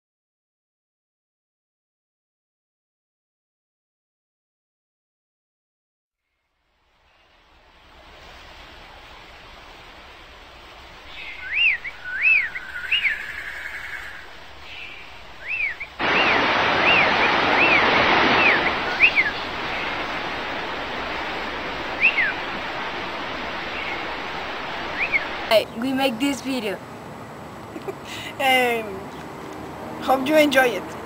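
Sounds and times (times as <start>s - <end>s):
steady rushing noise: 6.7s - 31.0s
birds whistling: 11.0s - 20.4s, 21.8s - 25.5s.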